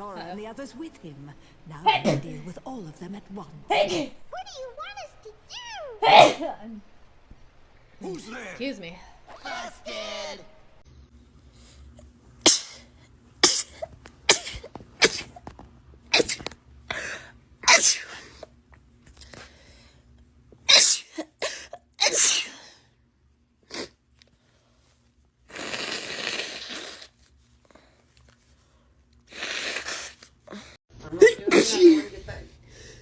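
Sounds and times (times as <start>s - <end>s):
women sneezing: 6.0s - 6.6s, 9.3s - 10.5s, 12.4s - 15.4s, 16.1s - 18.5s, 20.7s - 22.8s, 29.3s - 32.2s.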